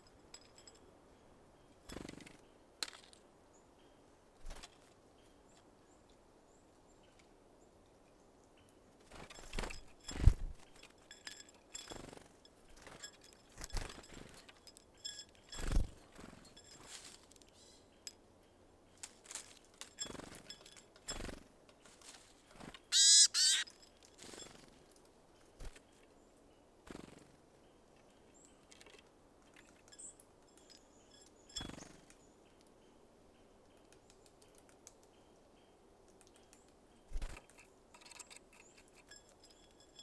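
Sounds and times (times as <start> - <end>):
birds tapping at feeder: 9.1 - 17.0, 22.9 - 23.6, 28.8 - 32.2, 36.1 - 40.0
songbird harsh calls: 22.9 - 23.6.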